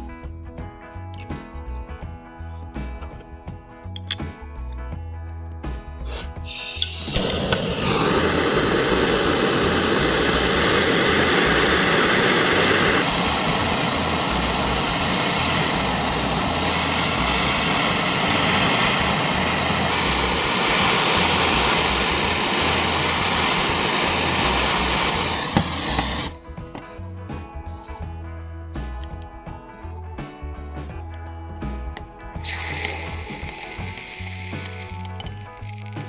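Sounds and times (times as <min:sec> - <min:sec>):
small motor running with rushing noise: 0:06.1 - 0:26.4.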